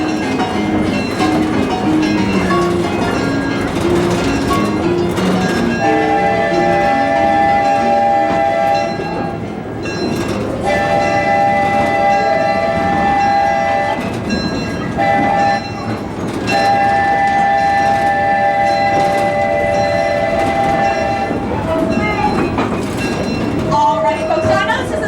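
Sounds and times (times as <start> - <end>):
steam locomotive chime whistle: 0.0 - 22.7
train rumble and clatter: 0.0 - 25.0.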